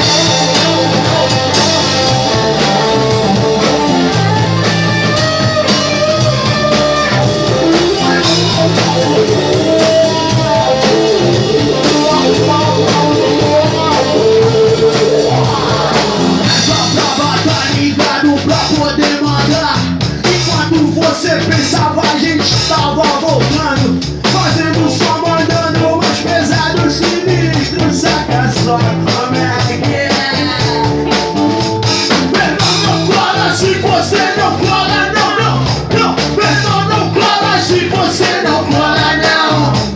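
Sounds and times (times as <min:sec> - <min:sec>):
guitar slide: 0:00.0 - 0:17.0
rock band playing: 0:00.0 - 0:39.9.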